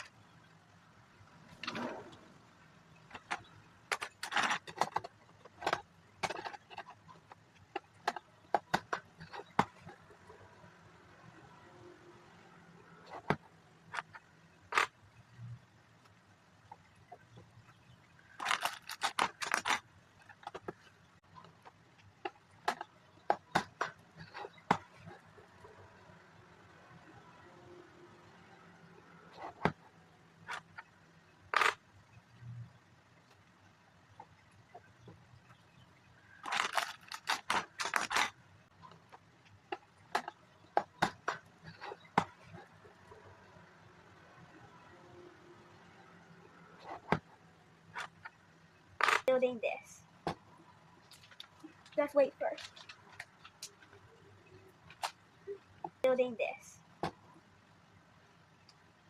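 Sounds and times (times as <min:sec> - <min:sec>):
plastic pieces rattling and scraping: 0:03.1 - 0:10.0, 0:18.3 - 0:20.9, 0:36.3 - 0:38.4, 0:51.0 - 0:54.0
plastic bricks clicking: 0:36.4 - 0:38.4.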